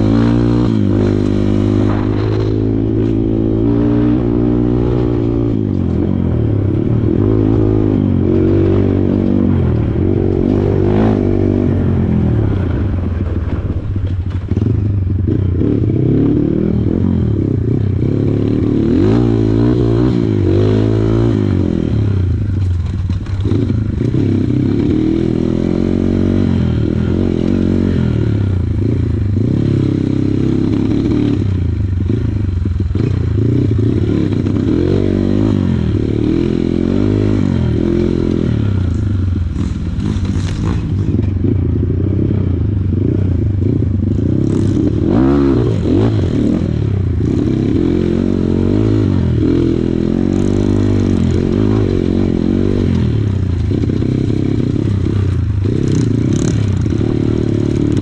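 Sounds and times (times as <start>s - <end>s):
dirt bike engine revving: 0.0s - 13.3s, 14.4s - 58.0s
bike rattling over rough ground: 22.4s - 24.2s, 38.8s - 41.6s.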